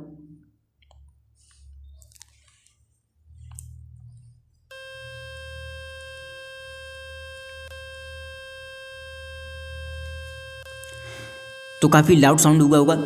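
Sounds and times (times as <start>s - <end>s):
phone speaker buzzing tone: 4.7s - 13.0s.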